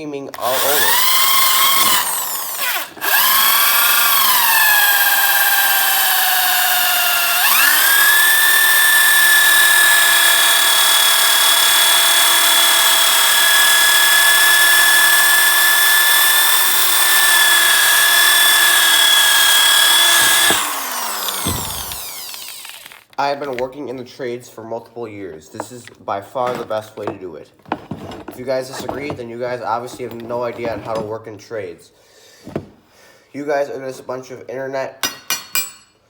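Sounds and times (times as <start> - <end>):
power drill whine: 0.3 - 23.2.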